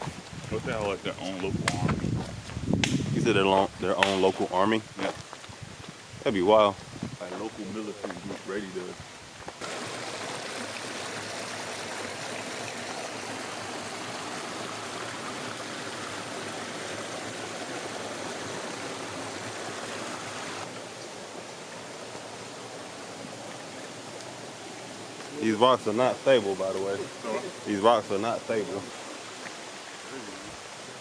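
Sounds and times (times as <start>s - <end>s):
stream water rushing: 9.6s - 31.0s.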